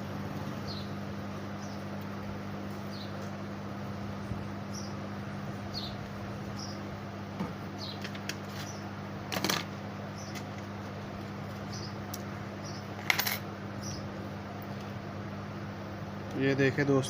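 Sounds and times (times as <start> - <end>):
low electrical hum: 0.0 - 17.0
tools clattering on a bench: 9.3 - 9.7, 13.0 - 13.4.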